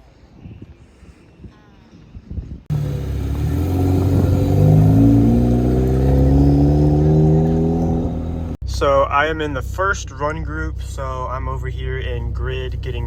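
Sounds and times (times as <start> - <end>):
car engine accelerating: 2.7 - 13.0.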